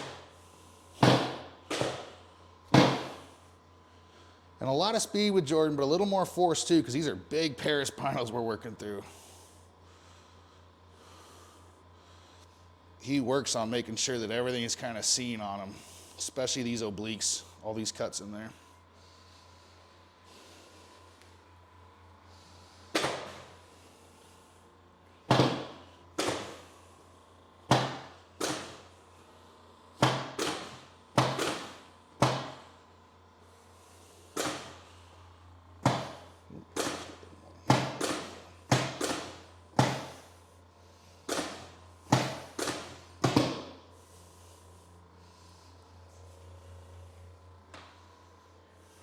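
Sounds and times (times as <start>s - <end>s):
sharp thuds on back: 1.0s - 3.3s.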